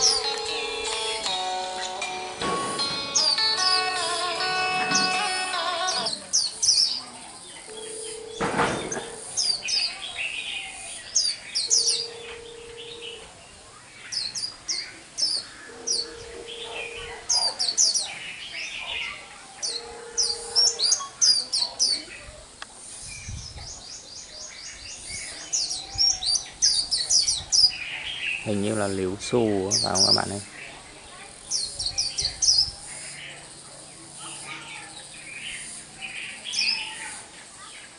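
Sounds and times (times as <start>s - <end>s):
music: 0.0s - 6.2s
bird chirping and trilling: 0.0s - 22.3s, 23.0s - 37.9s.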